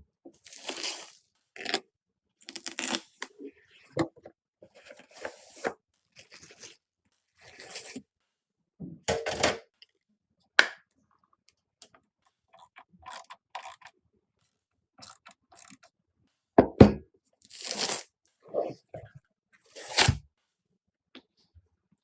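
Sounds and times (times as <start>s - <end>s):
computer parts clicking and scraping: 12.6s - 13.9s, 15.0s - 15.8s.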